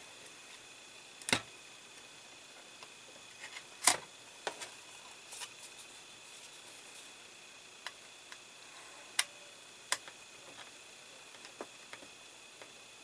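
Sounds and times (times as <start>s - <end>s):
small parts clicking and tapping: 9.9s - 12.8s.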